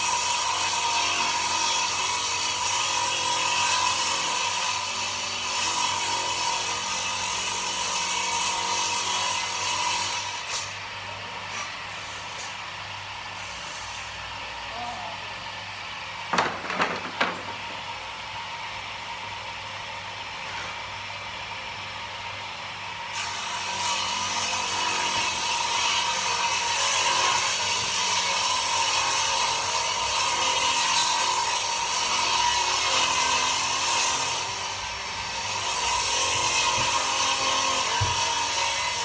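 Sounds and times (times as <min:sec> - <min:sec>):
table saw cutting wood: 0:00.0 - 0:10.8, 0:23.1 - 0:39.0.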